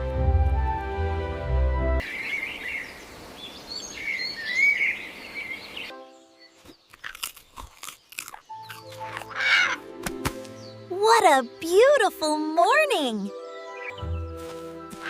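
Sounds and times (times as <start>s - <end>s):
steady outdoor hiss: 2.0s - 7.0s
birds chirping: 2.0s - 15.0s
sharp crunching clicks: 6.9s - 9.4s.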